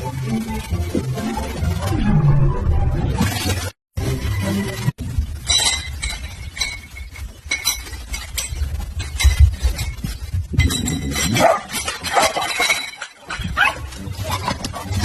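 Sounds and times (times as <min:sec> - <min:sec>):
small hard objects clinking: 0:05.4 - 0:14.2.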